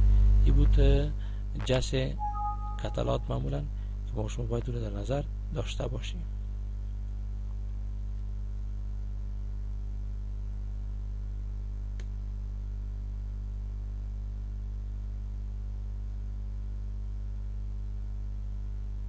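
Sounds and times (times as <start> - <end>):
steady low hum: 0.0 - 8.1
faint click: 11.9 - 12.2.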